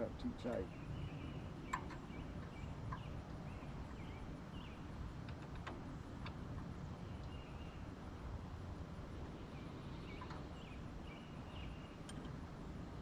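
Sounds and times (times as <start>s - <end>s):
low steady rumble: 0.0s - 13.0s
faint bird chirps: 9.4s - 12.2s.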